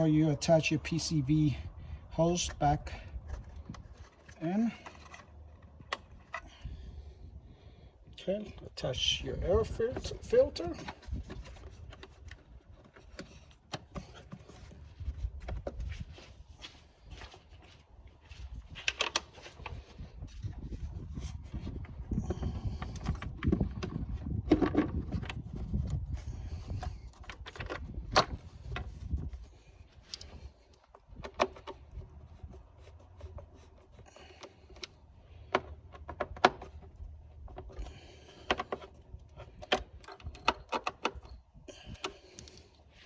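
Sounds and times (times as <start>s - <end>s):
car parts clicking and rattling: 9.6s - 16.2s, 18.7s - 21.7s, 22.3s - 43.0s.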